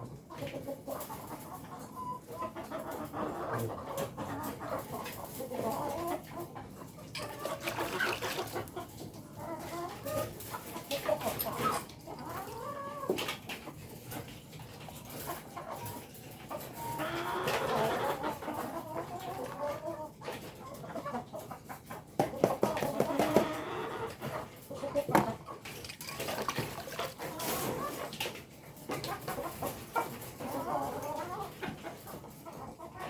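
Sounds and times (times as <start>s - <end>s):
chickens calling: 0.0s - 33.0s
clicks and knocks: 25.1s - 26.2s.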